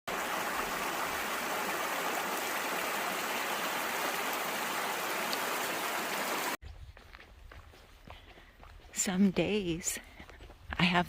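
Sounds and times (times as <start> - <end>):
stream flowing: 0.1 - 6.6.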